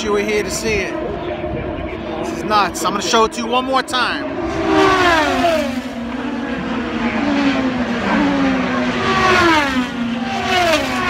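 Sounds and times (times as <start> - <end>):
race car engines screaming past: 4.2 - 11.0.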